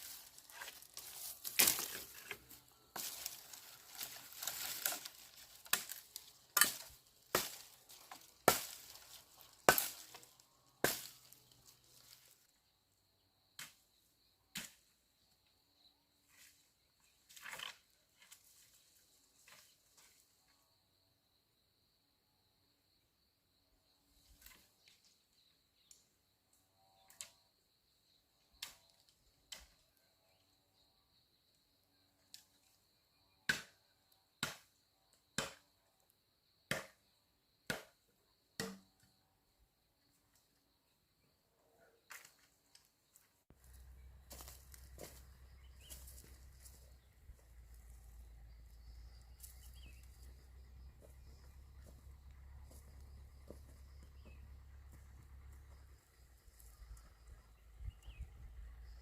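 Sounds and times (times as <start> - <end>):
hand tool chopping strikes: 4.1 - 7.7, 8.4 - 9.1, 9.7 - 10.2, 10.8 - 11.1, 33.5 - 33.7, 34.4 - 34.7, 35.4 - 35.6, 36.7 - 37.0, 37.7 - 37.9, 38.6 - 38.9.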